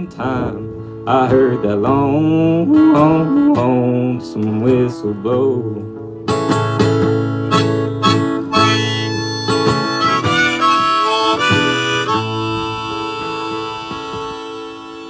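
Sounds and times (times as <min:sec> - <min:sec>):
strummed acoustic guitar: 0:00.0 - 0:15.0
harmonica playing: 0:07.4 - 0:15.0.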